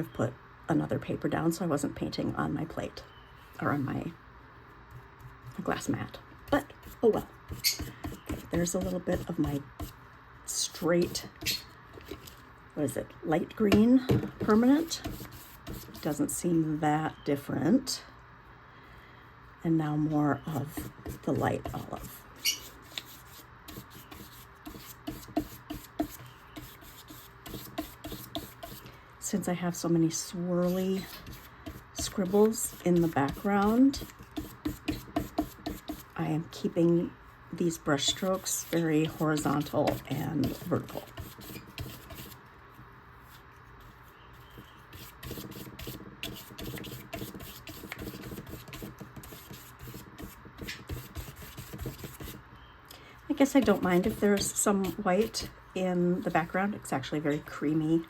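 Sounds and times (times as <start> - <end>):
paintbrush rubbing on paper: 14.4 - 16.2, 20.5 - 28.8, 30.2 - 36.2, 37.9 - 42.4, 43.2 - 52.4, 53.5 - 55.5.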